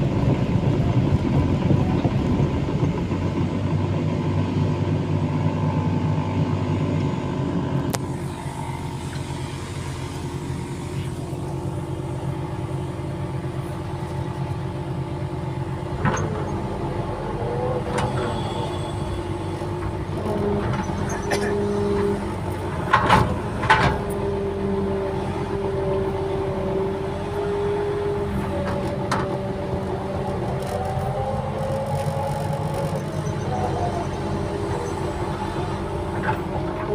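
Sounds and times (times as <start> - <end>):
earthmoving machine engine running: 0.0 - 36.9.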